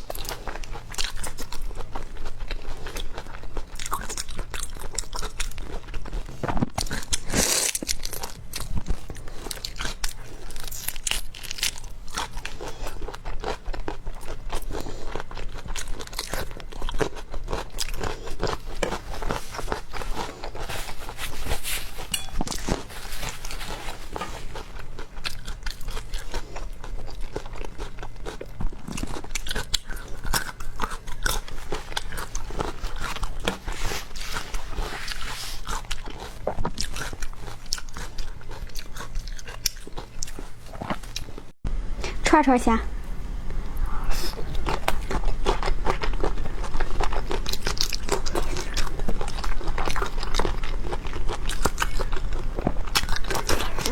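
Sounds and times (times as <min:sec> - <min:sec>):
crunching and chewing seafood: 0:00.0 - 0:41.6, 0:44.3 - 0:53.9.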